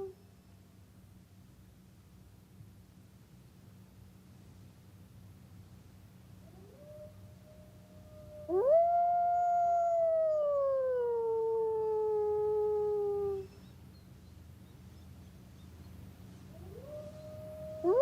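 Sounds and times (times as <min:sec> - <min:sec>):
wolves howling: 0:06.5 - 0:13.5, 0:16.6 - 0:18.0.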